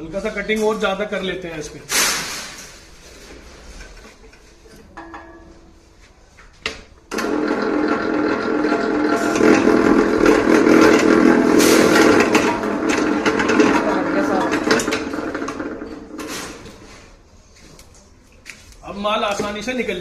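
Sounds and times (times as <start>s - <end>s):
wire stripping machine humming: 7.1s - 16.8s.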